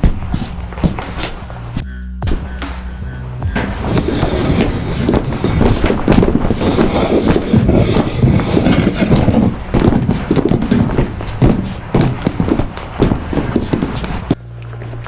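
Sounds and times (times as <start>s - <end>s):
dense clatter of knocks: 3.6s - 14.3s.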